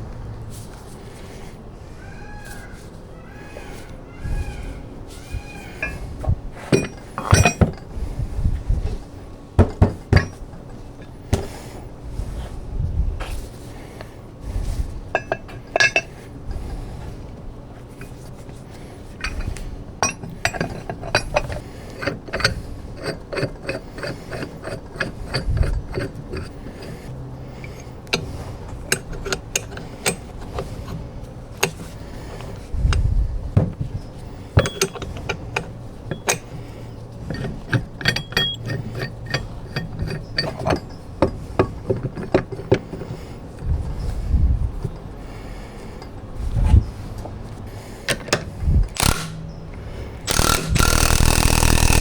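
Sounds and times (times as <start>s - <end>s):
metal clinks: 5.7s - 7.9s, 9.6s - 11.5s, 15.1s - 16.2s, 19.1s - 24.4s, 34.5s - 43.1s, 50.2s - 52.0s
dull knocks: 9.6s - 10.4s
hand ratchet clicking: 19.2s - 30.9s, 34.6s - 36.6s, 37.3s - 41.4s, 48.9s - 52.0s.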